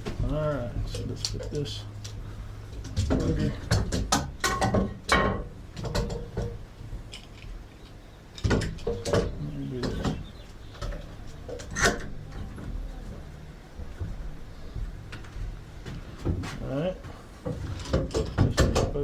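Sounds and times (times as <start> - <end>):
wooden boards and tools clattering: 2.8 - 7.5, 8.4 - 12.8, 17.4 - 19.0.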